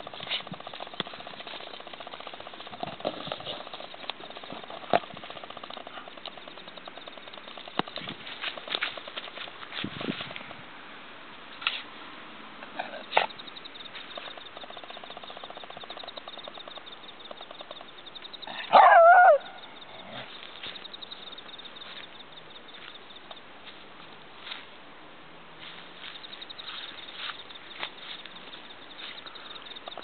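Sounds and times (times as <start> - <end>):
dog bark-howl: 18.6 - 19.6.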